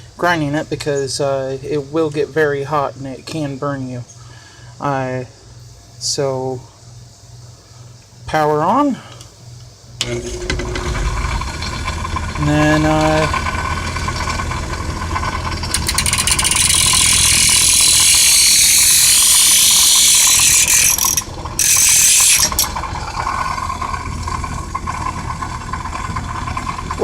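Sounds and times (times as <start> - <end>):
bench grinder humming and whining: 10.0 - 27.0
nail grinding against wheel: 10.0 - 27.0.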